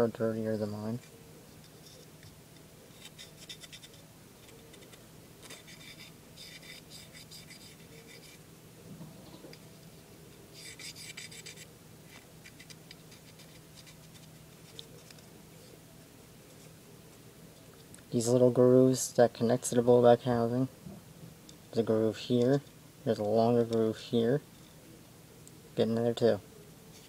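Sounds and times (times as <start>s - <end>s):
cotton swab scratching metal: 2.9s - 8.4s, 10.6s - 15.2s.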